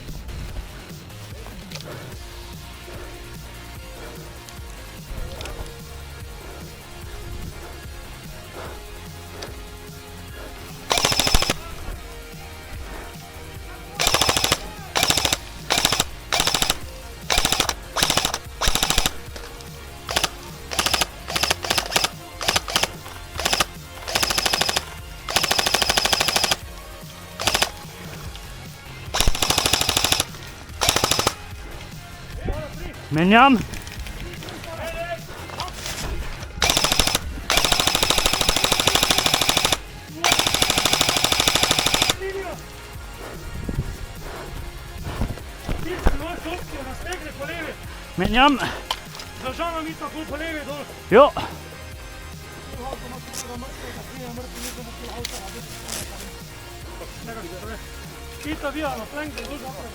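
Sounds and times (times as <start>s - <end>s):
airsoft gun firing bursts: 10.3s - 12.1s, 13.9s - 31.8s, 36.6s - 42.6s.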